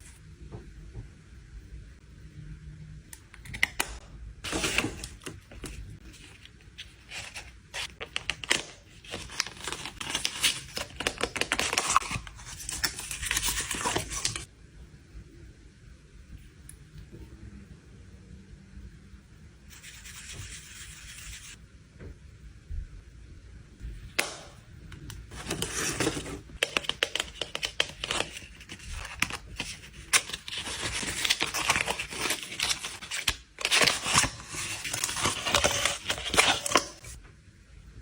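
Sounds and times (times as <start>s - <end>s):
packaging crinkling and tearing: 4.4s - 14.5s, 25.3s - 37.2s.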